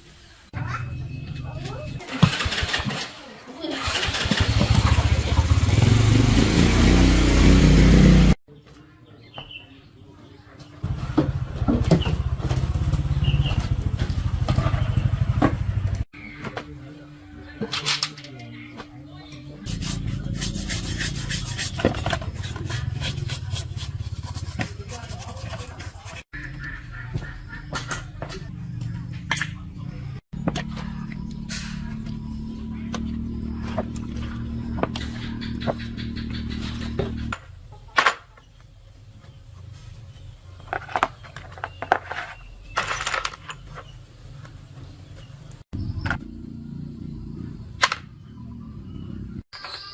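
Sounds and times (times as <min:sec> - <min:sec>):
scrubbing rusty metal: 0:19.6 - 0:26.5
metal parts clinking: 0:41.9 - 0:43.8.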